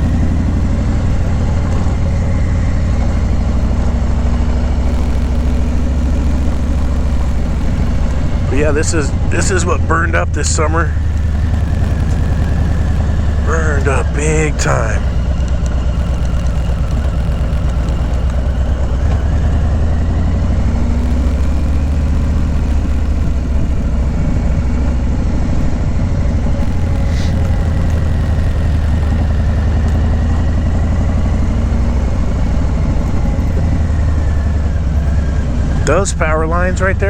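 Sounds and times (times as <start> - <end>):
motorcycle engine running: 0.0 - 37.0.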